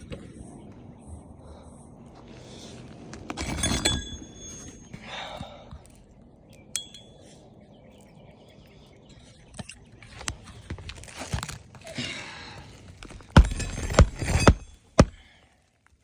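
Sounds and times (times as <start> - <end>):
metal tool clinking and scraping: 3.3 - 5.0, 6.7 - 7.4, 13.0 - 15.2.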